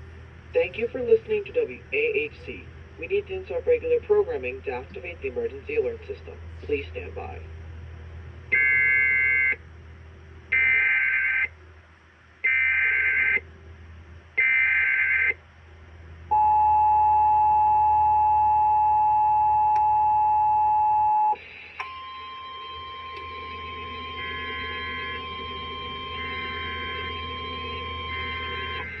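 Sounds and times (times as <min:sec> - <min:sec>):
faint steady tone: 0:16.2 - 0:29.0
two-tone attention signal: 0:16.3 - 0:29.0
buzzy digital header bursts: 0:22.6 - 0:29.0.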